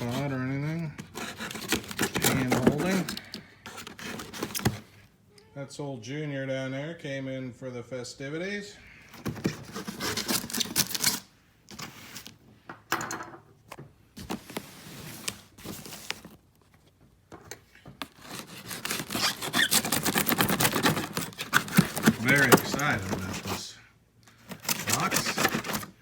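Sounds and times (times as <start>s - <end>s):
cardboard box being opened: 1.0s - 4.9s, 9.2s - 11.2s, 14.2s - 16.4s, 18.0s - 23.7s, 24.5s - 26.0s
packing material rustling: 1.0s - 5.0s, 9.2s - 12.3s, 14.2s - 16.8s, 18.0s - 23.7s, 24.4s - 26.0s.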